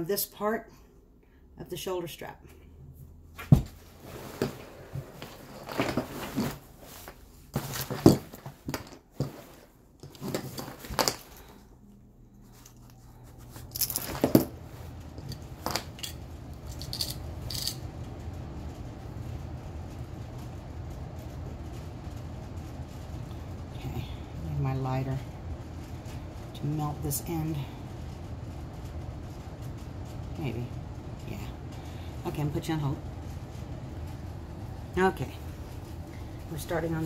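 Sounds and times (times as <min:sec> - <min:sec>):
low steady hum: 0:00.0 - 0:37.0
fabric rustling and scraping: 0:03.3 - 0:17.7.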